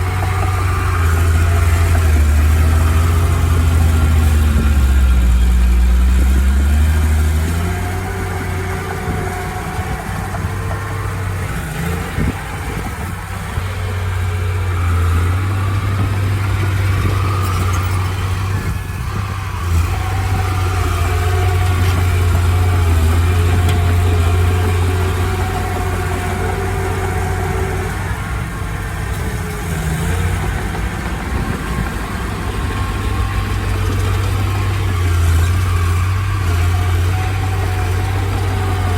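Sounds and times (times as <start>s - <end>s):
heavy diesel engine drone: 0.0s - 38.9s.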